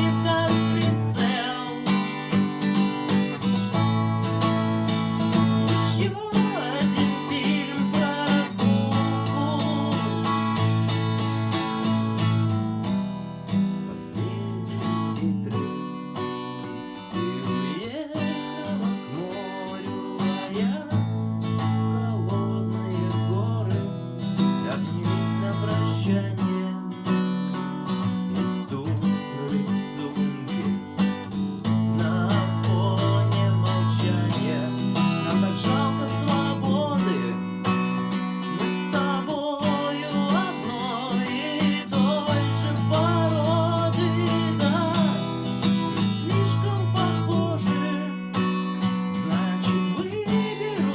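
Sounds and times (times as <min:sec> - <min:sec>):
acoustic guitar strumming chords: 0:00.0 - 0:50.9.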